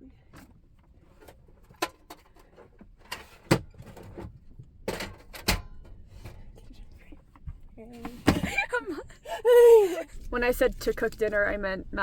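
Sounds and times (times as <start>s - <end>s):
knocks and clunks inside van: 0.1s - 10.2s.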